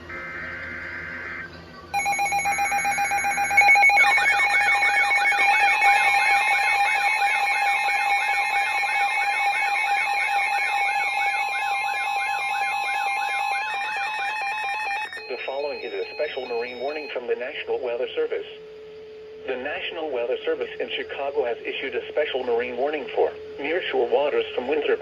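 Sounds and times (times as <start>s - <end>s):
warbling siren tone: 0.0s - 17.8s
rapidly pulsing beep: 0.0s - 25.0s.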